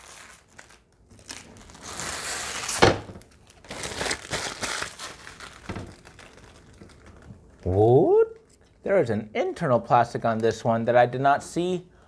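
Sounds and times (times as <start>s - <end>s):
plastic packaging crinkling: 0.0s - 7.7s.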